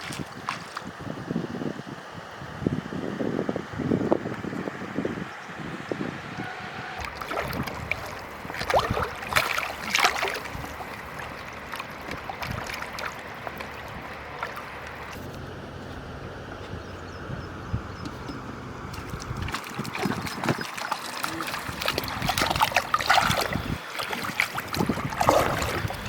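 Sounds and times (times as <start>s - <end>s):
water splashing and sloshing: 0.0s - 1.8s, 6.4s - 17.2s, 17.8s - 26.0s.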